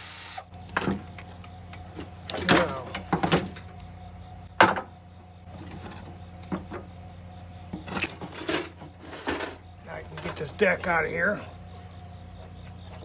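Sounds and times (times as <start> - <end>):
steady low hum: 0.0 - 13.0
metal parts clanking: 7.9 - 10.5.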